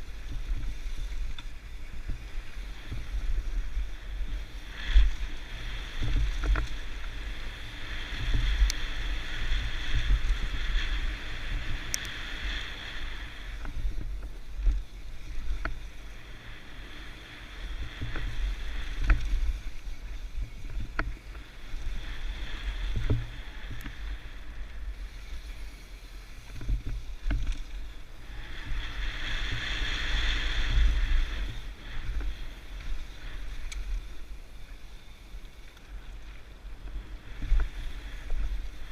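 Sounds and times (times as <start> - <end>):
wind buffeting microphone: 0.0 - 34.6
bike rattling clicks and knocks: 26.4 - 27.8.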